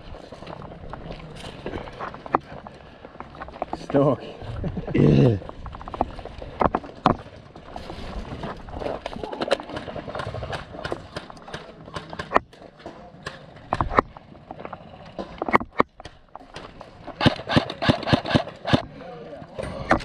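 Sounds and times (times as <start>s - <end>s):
irregular clicks and knocks: 5.5s - 7.7s, 8.4s - 18.9s.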